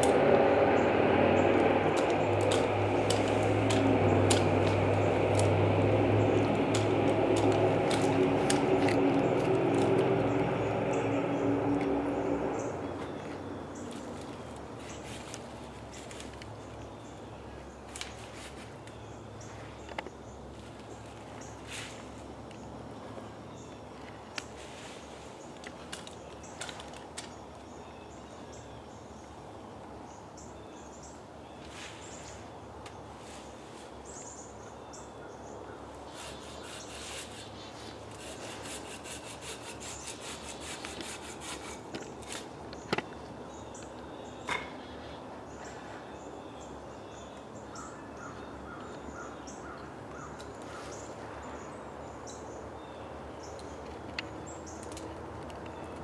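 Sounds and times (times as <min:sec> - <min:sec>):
outdoor background hum: 0:00.0 - 0:56.0
birds chirping: 0:33.9 - 0:56.0.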